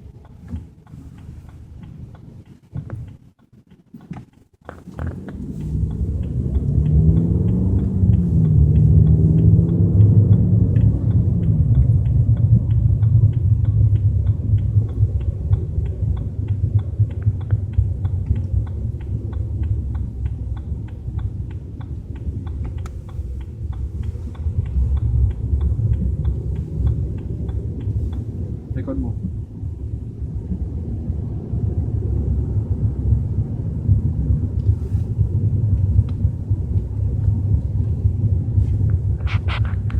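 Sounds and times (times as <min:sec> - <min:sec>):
fast regular ticking: 0:00.0 - 0:31.9
car cabin rumbling drone: 0:00.0 - 0:39.9.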